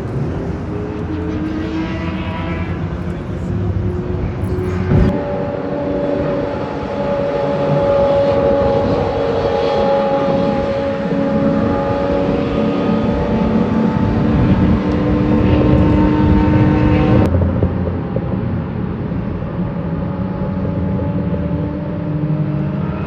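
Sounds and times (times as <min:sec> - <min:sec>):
sports car engine revving high: 0:00.0 - 0:17.3.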